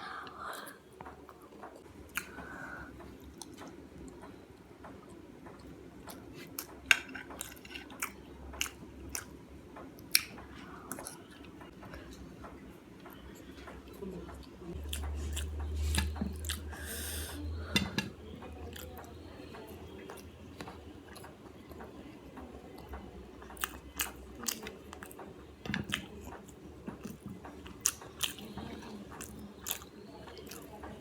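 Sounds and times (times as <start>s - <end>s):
close chewing of food: 10.0s - 31.0s.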